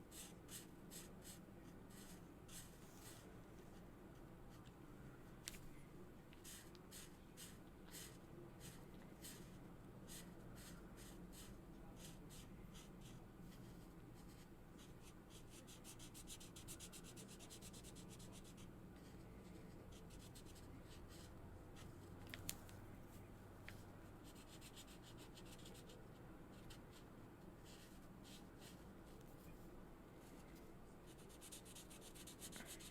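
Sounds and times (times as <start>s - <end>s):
marker scratching across paper: 0.1s - 3.3s, 6.4s - 21.9s, 24.2s - 27.0s, 27.6s - 29.5s, 31.0s - 32.9s.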